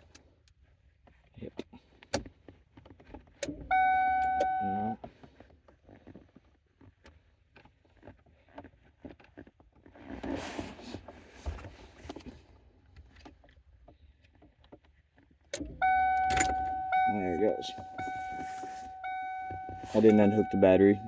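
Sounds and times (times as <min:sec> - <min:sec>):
scraping rustle: 0:17.8 - 0:20.1.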